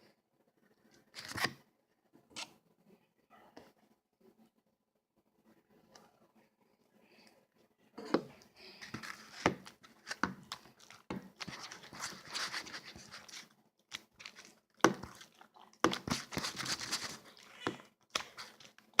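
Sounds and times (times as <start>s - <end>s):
slime squishing and crackling: 8.9s - 19.0s.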